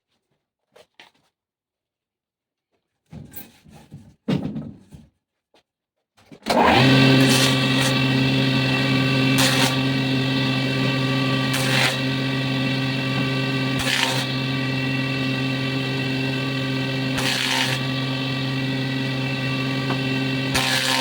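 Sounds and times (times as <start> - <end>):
power saw motor running: 6.5 - 21.0.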